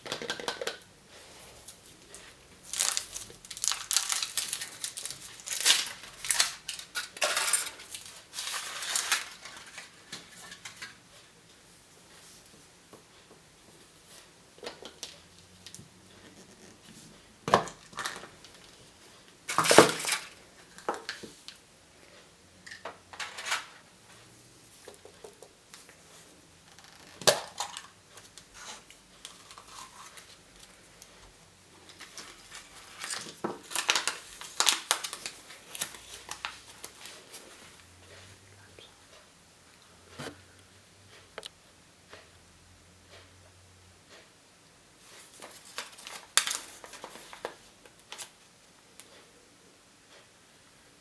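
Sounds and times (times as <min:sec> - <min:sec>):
wrappers crinkling and tearing: 0:01.7 - 0:10.0, 0:31.9 - 0:37.6, 0:45.4 - 0:48.3
packaging clicks and snaps: 0:02.7 - 0:09.4, 0:33.0 - 0:37.0.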